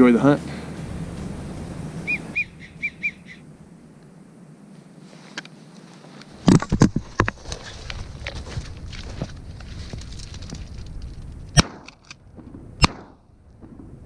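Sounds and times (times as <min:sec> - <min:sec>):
wigeon whistling: 0:02.0 - 0:03.5.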